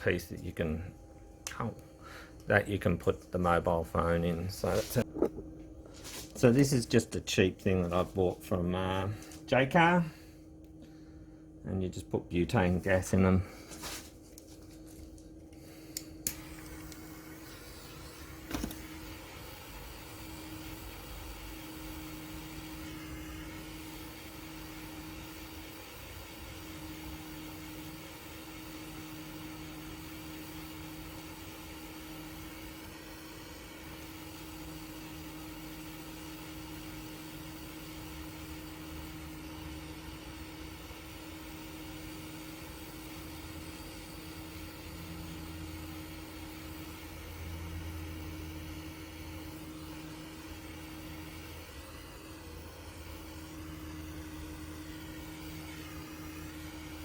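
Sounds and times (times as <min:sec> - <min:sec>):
torch flame hissing: 0:03.7 - 0:10.4, 0:15.1 - 0:57.0
torch ignition click: 0:15.9 - 0:20.9.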